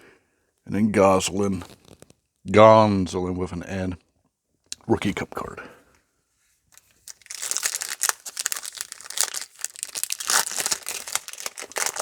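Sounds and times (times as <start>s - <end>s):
foil wrapper crinkling: 1.7s - 2.1s, 6.7s - 12.0s.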